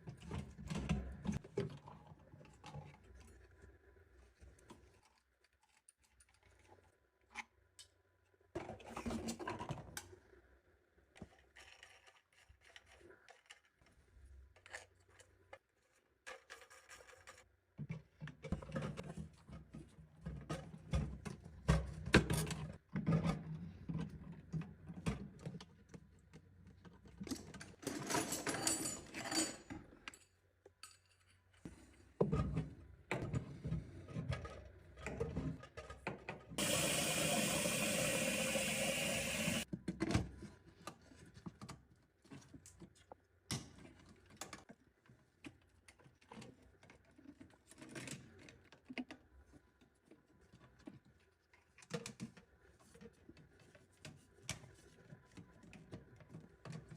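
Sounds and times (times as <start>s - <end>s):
parts and tools clattering: 27.4s - 29.8s.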